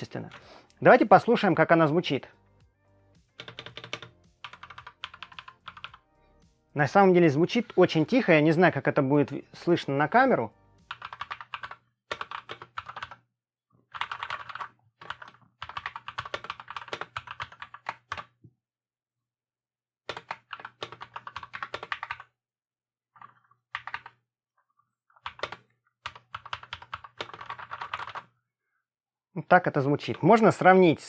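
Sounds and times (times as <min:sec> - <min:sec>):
mechanical keyboard typing: 0:03.4 - 0:06.0, 0:10.9 - 0:13.2, 0:13.9 - 0:18.3, 0:20.1 - 0:22.3, 0:23.2 - 0:24.2, 0:25.2 - 0:28.3.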